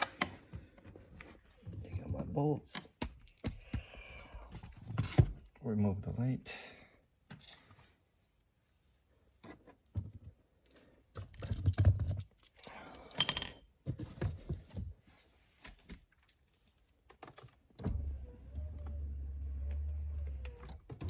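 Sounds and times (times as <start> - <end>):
small parts clinking and rattling: 10.6 - 13.7.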